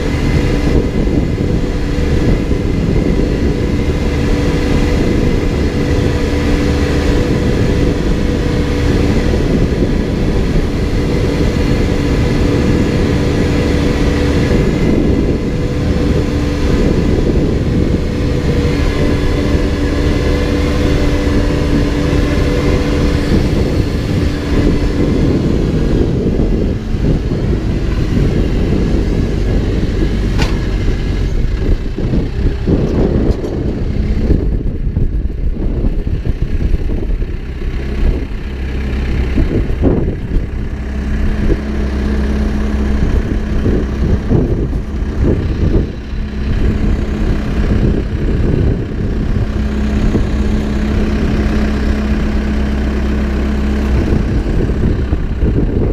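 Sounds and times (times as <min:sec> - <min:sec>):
backhoe engine running: 0:00.0 - 0:55.9
sharp knocks: 0:30.3 - 0:30.8.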